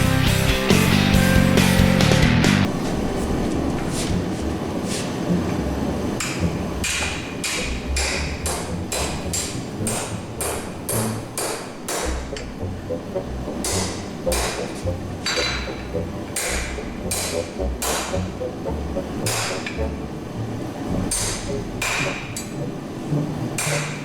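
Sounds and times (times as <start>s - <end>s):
hammer striking steel on anvil: 6.2s - 12.5s, 13.6s - 18.2s, 19.3s - 19.8s, 21.1s - 22.6s, 23.6s - 24.0s.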